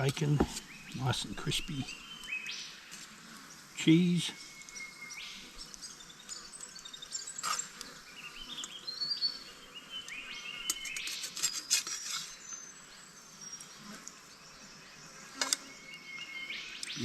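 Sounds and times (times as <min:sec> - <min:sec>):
steady hiss: 0:00.0 - 0:07.9
birds singing: 0:00.0 - 0:17.0.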